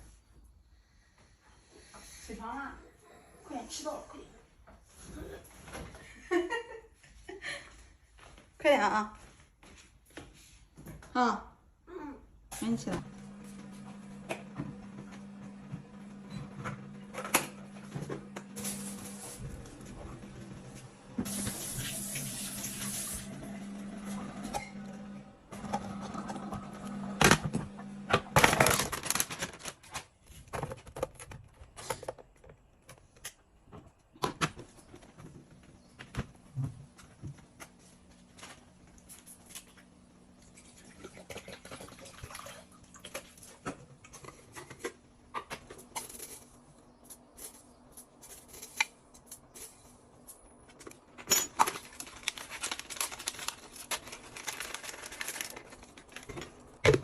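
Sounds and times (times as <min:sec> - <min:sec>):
rustling of things handled: 0:28.4 - 0:33.9, 0:43.0 - 0:57.0.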